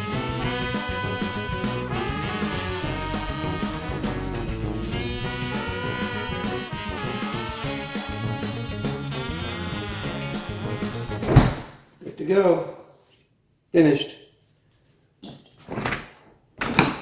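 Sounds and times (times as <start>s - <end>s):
upbeat swing jazz with brass: 0.0s - 11.5s.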